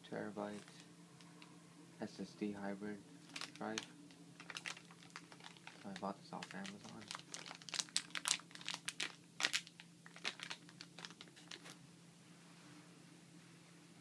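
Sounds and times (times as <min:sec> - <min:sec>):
packaging crinkling: 0:03.2 - 0:11.8.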